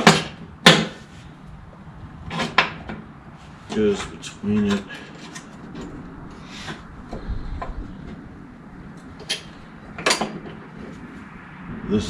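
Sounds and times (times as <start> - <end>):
mower deck parts clicking and knocking: 0.0 - 1.0, 2.3 - 3.1, 3.7 - 6.0, 8.9 - 11.0.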